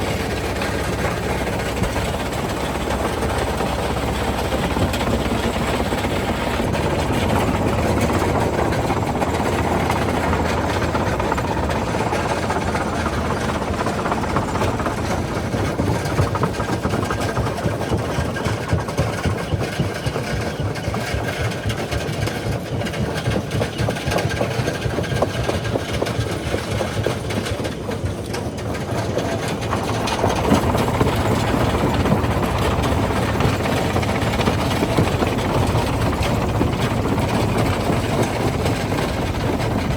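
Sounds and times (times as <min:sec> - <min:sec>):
jaw crusher machinery drone: 0:00.0 - 0:18.8, 0:27.7 - 0:39.9.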